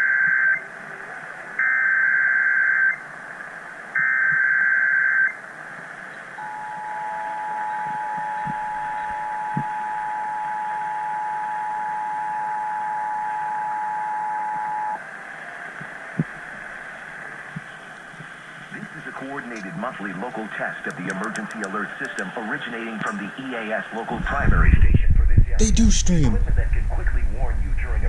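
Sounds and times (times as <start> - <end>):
radio hiss: 15.0 - 28.0.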